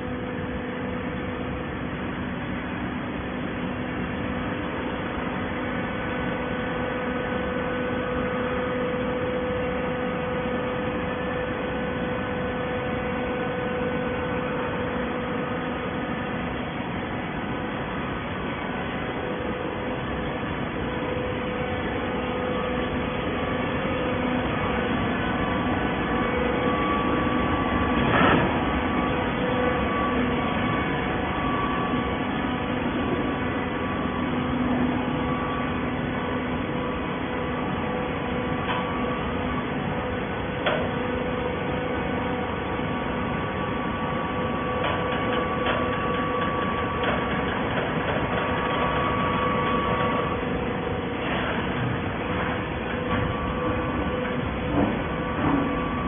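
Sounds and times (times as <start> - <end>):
baler machine hum: 0.0 - 56.0.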